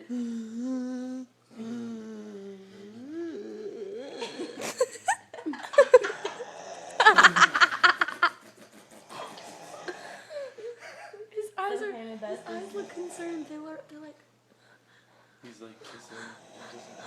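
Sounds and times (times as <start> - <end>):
hummed voice: 0.0 - 4.7
people giggling and laughing: 4.3 - 6.4, 7.0 - 11.4.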